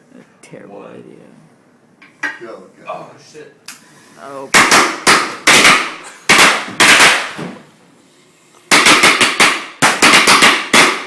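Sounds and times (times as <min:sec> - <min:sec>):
firecrackers banging: 0:04.5 - 0:07.6.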